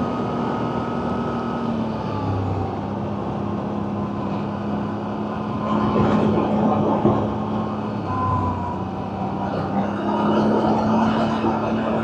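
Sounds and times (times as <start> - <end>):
atv engine running: 3.0 - 12.0.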